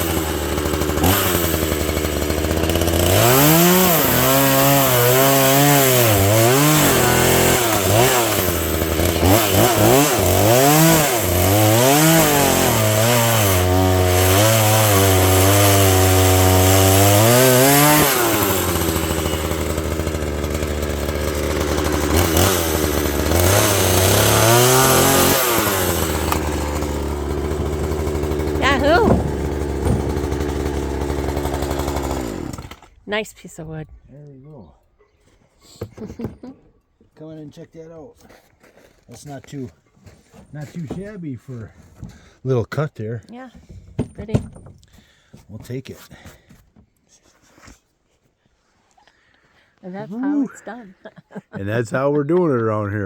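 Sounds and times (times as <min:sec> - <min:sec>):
chainsaw cutting wood: 0:00.0 - 0:33.0.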